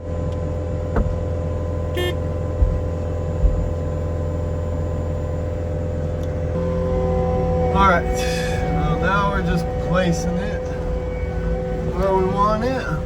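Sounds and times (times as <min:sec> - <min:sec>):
diesel engine running: 0:00.0 - 0:13.0
dull thumps: 0:00.9 - 0:01.4, 0:02.0 - 0:04.0.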